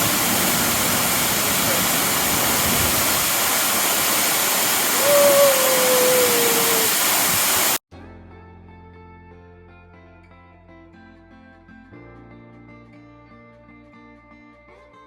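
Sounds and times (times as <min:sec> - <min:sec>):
waterfall rushing: 0:00.0 - 0:07.8
slowly falling held tone: 0:04.9 - 0:07.7.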